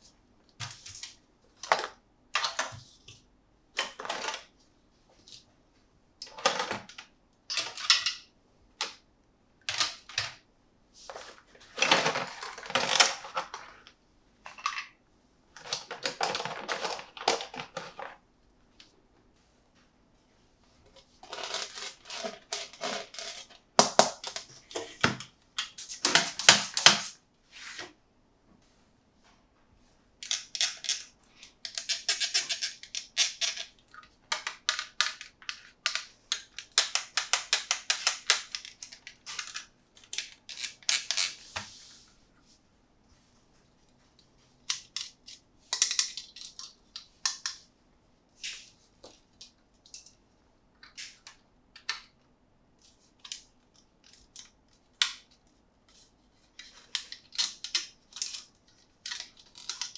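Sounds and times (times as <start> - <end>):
plastic and cardboard packaging crackling: 11.0 - 13.9, 15.6 - 18.2, 20.9 - 27.2, 56.0 - 59.9.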